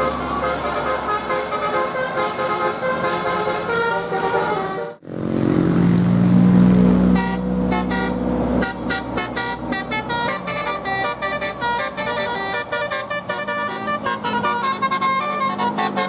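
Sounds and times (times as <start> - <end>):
multi-tone melodic bus horn: 0.0 - 5.1, 6.9 - 16.0
bus engine running: 0.0 - 16.0.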